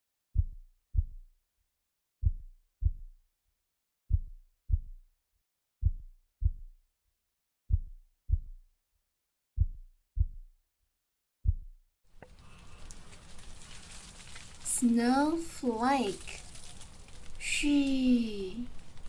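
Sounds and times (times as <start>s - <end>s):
slow heartbeat thuds: 4.1s - 5.0s, 5.8s - 6.7s, 7.7s - 8.6s, 9.6s - 10.5s, 11.4s - 11.7s.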